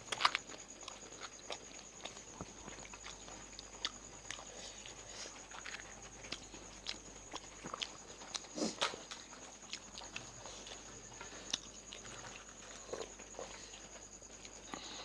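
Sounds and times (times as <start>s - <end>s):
crunching and chewing crisp shells: 0.0s - 15.0s.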